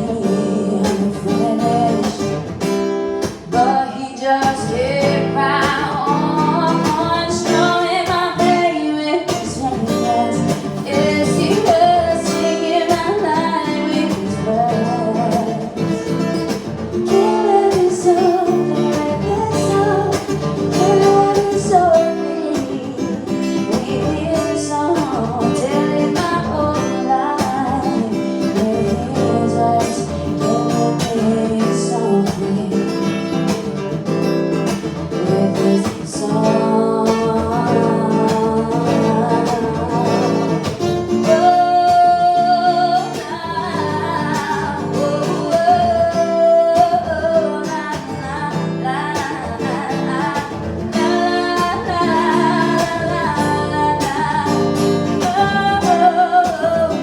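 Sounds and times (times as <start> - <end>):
person singing: 0.0 - 2.4, 3.4 - 16.3, 17.0 - 33.7, 35.1 - 57.0
acoustic guitar chords: 0.0 - 57.0.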